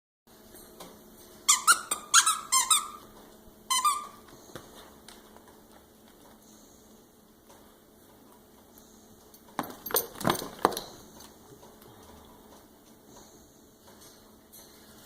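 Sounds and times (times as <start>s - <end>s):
squeaky dog toy squeaking: 1.5s - 3.1s, 3.7s - 4.2s.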